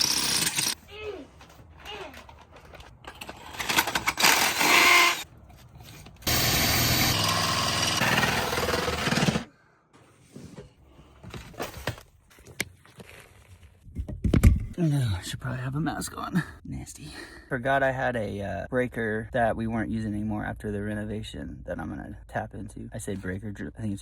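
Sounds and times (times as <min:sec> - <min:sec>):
power tool running: 0:00.0 - 0:00.8, 0:04.2 - 0:05.2, 0:06.3 - 0:09.5.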